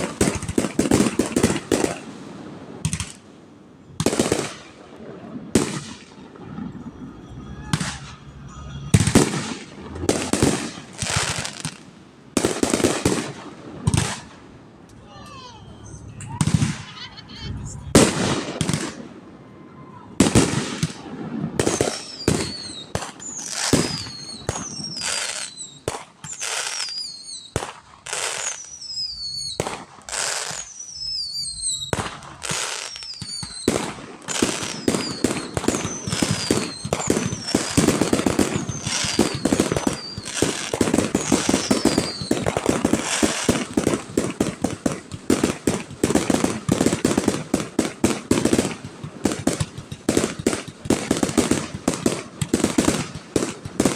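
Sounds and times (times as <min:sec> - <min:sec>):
firework crackles: 0:00.0 - 0:19.4, 0:20.2 - 0:53.9
falling firework whistles: 0:05.5 - 0:11.8, 0:21.6 - 0:48.8
firework shell bursts: 0:21.7 - 0:53.2.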